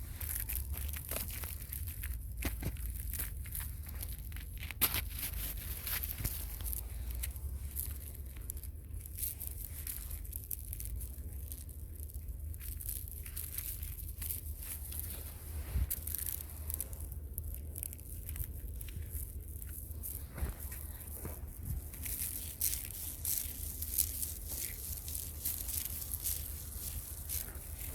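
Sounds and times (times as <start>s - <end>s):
light crackling and rustling: 0.0s - 27.9s
low wind rumble on microphone: 14.8s - 27.9s.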